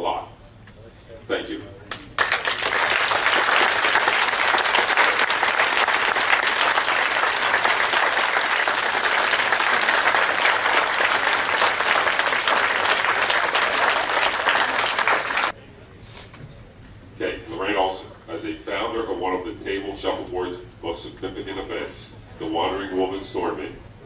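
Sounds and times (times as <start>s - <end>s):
audience applauding: 1.9s - 15.6s.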